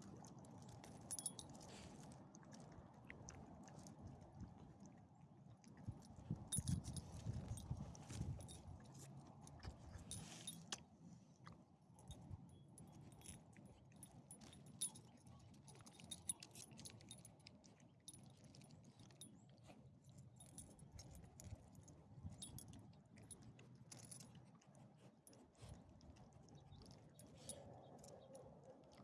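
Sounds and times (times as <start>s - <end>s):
dog collar tags jingling: 1.0s - 1.7s, 6.5s - 9.0s, 10.0s - 10.7s, 12.8s - 17.3s, 22.3s - 22.8s.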